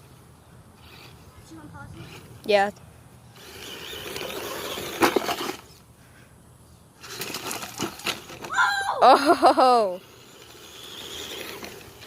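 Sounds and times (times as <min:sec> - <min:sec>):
toy car motor and tyres: 0:00.8 - 0:02.7, 0:03.3 - 0:05.8, 0:07.0 - 0:08.8, 0:09.4 - 0:12.0.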